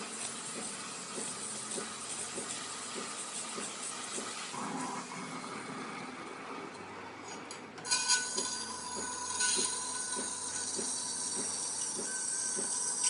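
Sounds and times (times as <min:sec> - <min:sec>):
clinks: 0:07.8 - 0:13.0.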